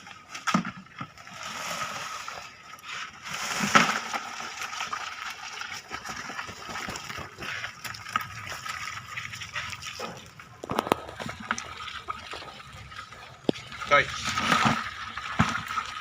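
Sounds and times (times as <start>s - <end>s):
shallow water splashing: 1.2s - 16.0s.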